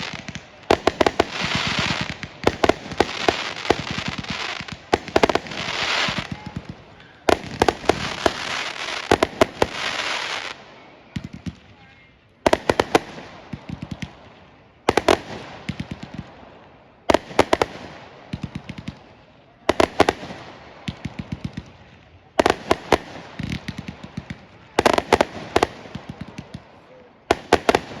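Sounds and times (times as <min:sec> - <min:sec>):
crackling pops: 0:00.0 - 0:16.4
firework bangs: 0:00.0 - 0:28.0.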